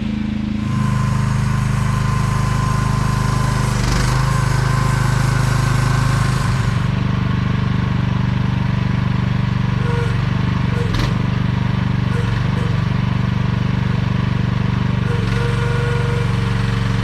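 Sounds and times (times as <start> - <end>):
small engine running: 0.0 - 17.0
hydraulic whine and hiss: 0.6 - 7.0, 15.0 - 17.0.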